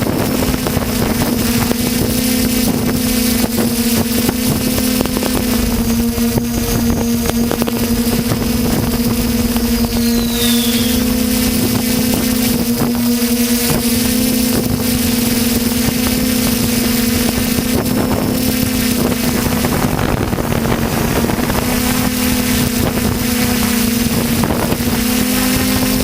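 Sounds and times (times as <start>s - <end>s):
drone motors humming: 0.0s - 26.0s
falling whistle: 9.6s - 11.5s.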